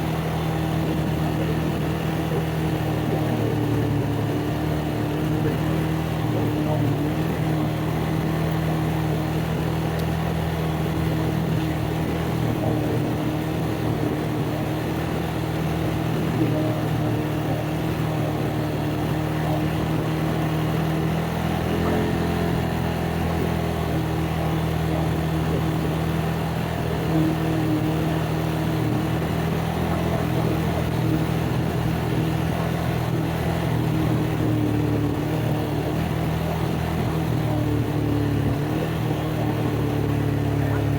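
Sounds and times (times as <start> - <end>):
atv engine running: 0.0 - 40.9.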